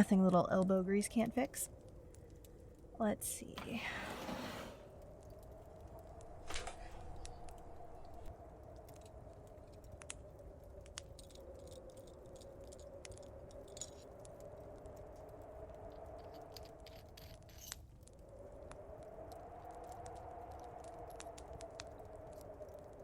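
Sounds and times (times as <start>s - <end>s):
storm wind howling: 0.0s - 23.0s
low rumble: 1.8s - 17.1s.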